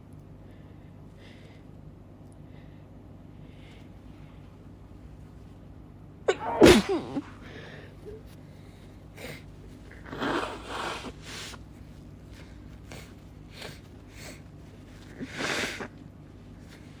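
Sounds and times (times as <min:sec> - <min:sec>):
woman blowing her nose: 0:06.4 - 0:07.3, 0:10.0 - 0:11.6, 0:15.2 - 0:15.9.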